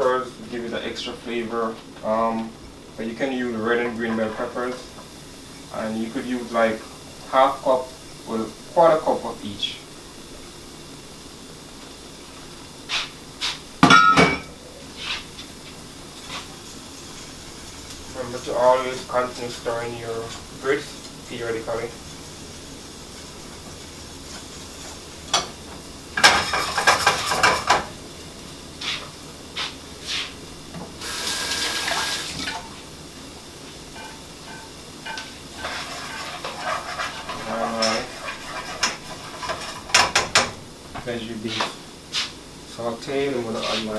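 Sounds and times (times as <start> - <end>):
utensil clinking on dish: 13.8 - 14.6
tap water running: 15.3 - 41.2.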